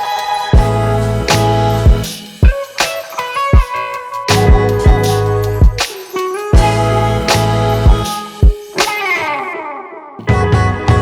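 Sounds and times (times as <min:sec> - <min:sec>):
background music with steady beat: 0:00.0 - 0:11.0
deep bass notes: 0:00.6 - 0:02.1, 0:04.4 - 0:05.8, 0:06.6 - 0:08.1, 0:10.2 - 0:11.0
kick drum thumps: 0:01.9 - 0:02.6, 0:04.4 - 0:05.0, 0:05.6 - 0:05.9, 0:06.6 - 0:06.8.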